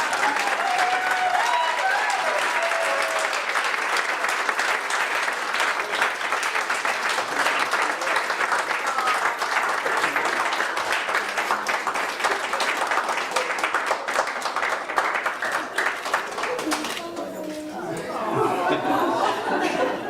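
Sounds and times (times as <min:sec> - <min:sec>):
people clapping: 0:00.0 - 0:20.0
voices: 0:15.7 - 0:20.0.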